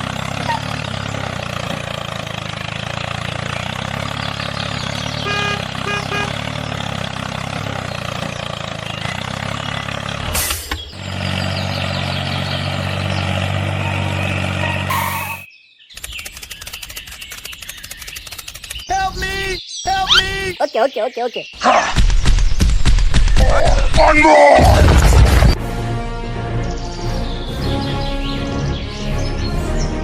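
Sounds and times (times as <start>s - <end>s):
truck engine hum: 0.0s - 21.5s.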